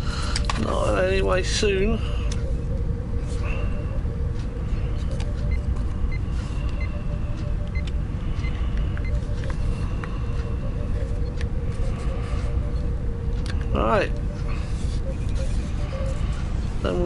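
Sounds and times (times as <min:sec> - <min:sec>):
constant hum: 0:00.0 - 0:17.0
low background rumble: 0:00.0 - 0:17.0.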